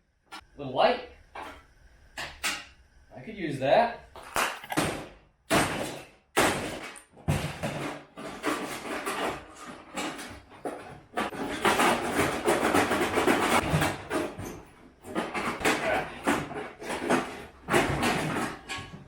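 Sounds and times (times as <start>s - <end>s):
continuous clatter and rattle: 4.2s - 19.0s
knocks and clanks of metal parts: 4.3s - 19.0s.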